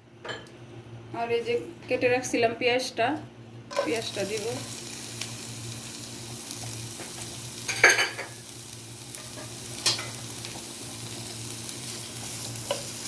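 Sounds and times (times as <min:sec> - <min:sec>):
onions sizzling in a pan: 0:03.7 - 0:13.0.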